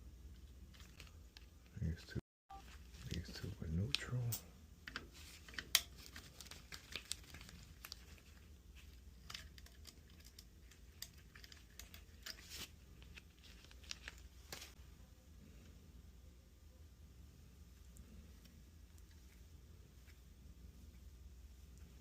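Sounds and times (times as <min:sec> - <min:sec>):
low steady hum: 0:00.0 - 0:22.0
clicks and rustles of wires: 0:00.2 - 0:02.0, 0:02.6 - 0:14.8.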